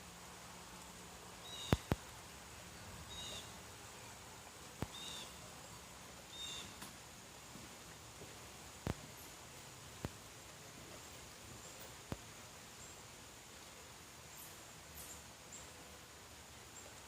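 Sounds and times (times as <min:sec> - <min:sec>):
light rain: 0:00.0 - 0:17.0
bird chirping: 0:01.4 - 0:02.0, 0:03.1 - 0:03.6, 0:04.8 - 0:05.4, 0:06.3 - 0:06.8.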